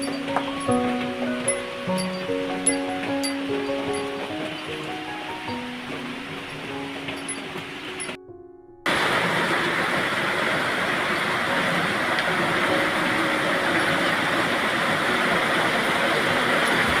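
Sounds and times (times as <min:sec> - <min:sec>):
heavy rain hissing: 0:00.0 - 0:08.2, 0:08.9 - 0:17.0
background music: 0:00.0 - 0:08.9.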